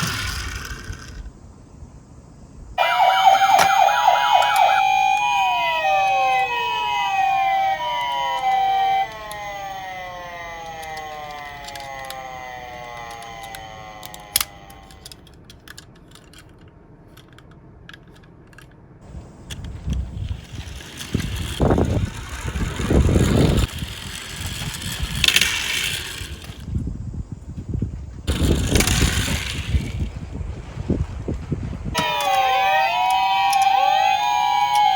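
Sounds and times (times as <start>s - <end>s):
toy cars rolling on a slope: 0.0s - 1.3s, 2.8s - 18.8s, 19.4s - 26.8s, 28.2s - 30.2s, 32.0s - 34.9s
warbling siren wail: 2.8s - 15.1s, 32.0s - 34.9s
two-tone ambulance siren: 2.8s - 15.2s, 32.0s - 34.9s.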